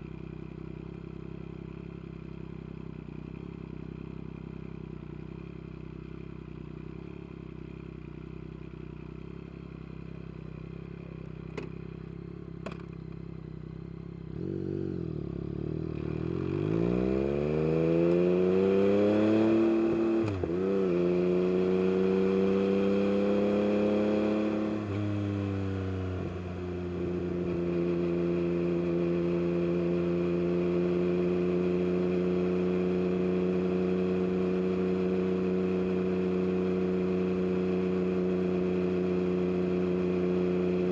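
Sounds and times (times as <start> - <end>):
motorcycle engine revving: 10.6 - 40.9.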